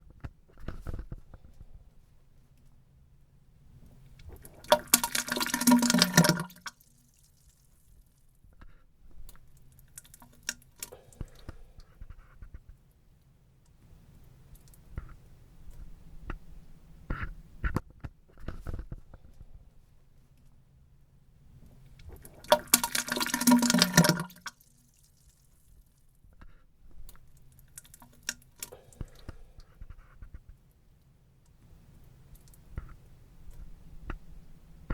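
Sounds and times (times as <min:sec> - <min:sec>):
wet liquid splatter: 0:04.3 - 0:07.2, 0:22.1 - 0:25.0
drips and splats: 0:04.3 - 0:08.1, 0:09.4 - 0:11.5, 0:22.0 - 0:26.0, 0:27.2 - 0:29.3.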